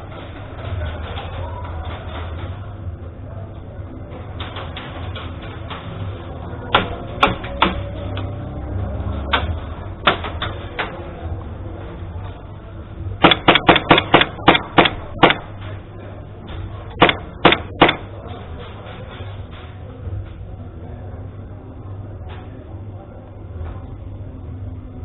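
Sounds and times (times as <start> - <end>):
airsoft gun shots: 13.2 - 15.5, 17.0 - 18.0.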